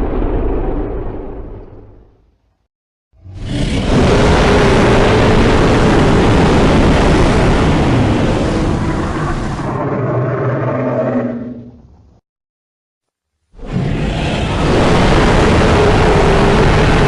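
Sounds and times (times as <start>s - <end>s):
long growling roar: 3.2s - 11.8s, 13.6s - 17.0s.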